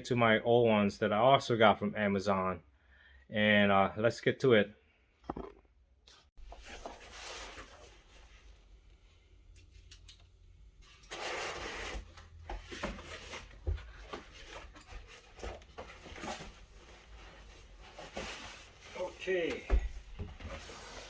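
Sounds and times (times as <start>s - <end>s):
rubbing and scraping: 10.9s - 21.0s.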